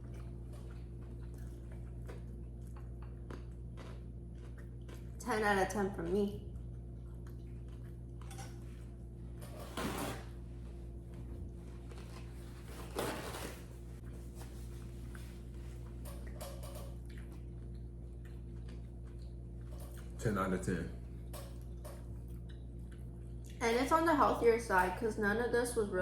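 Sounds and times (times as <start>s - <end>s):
low electrical hum: 0.0s - 26.0s
handling or eating noises: 7.5s - 10.4s, 11.1s - 20.2s.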